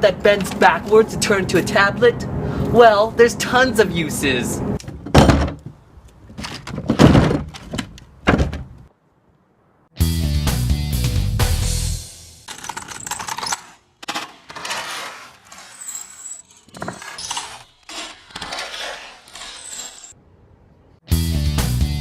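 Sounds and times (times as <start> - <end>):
loud music: 10.0 - 12.4, 21.1 - 22.0.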